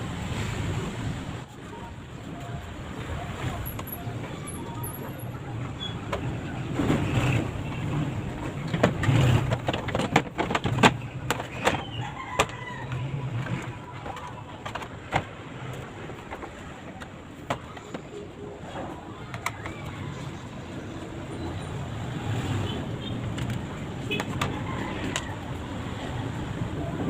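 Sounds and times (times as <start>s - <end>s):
parts clicking and knocking: 6.1s - 20.0s, 23.1s - 25.6s.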